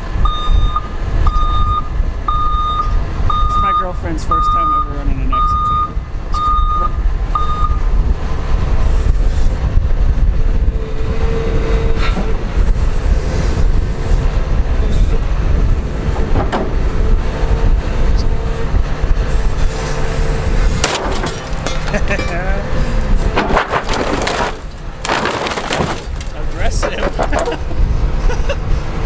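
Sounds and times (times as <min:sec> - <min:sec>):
excavator diesel engine rumbling: 0:00.0 - 0:29.0
reversing alarm beeping: 0:00.2 - 0:07.8.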